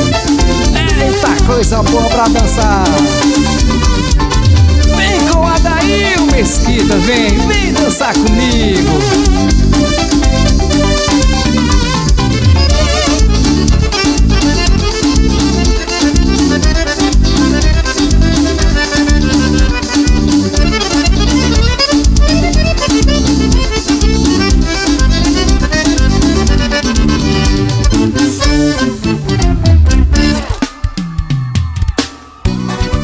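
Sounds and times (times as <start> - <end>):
instrumental dance music: 0.0 - 32.8.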